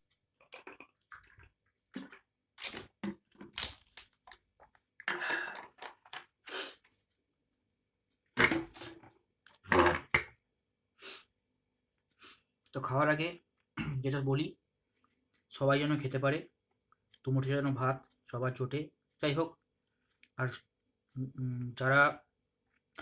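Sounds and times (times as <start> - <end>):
person gulping water: 0.2 - 3.6, 4.6 - 6.4, 8.4 - 10.3.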